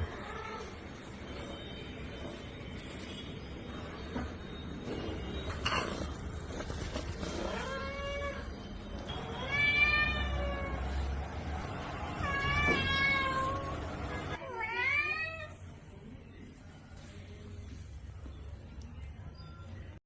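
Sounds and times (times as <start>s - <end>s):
cat meowing: 7.4s - 8.5s, 9.1s - 10.9s, 12.1s - 15.6s.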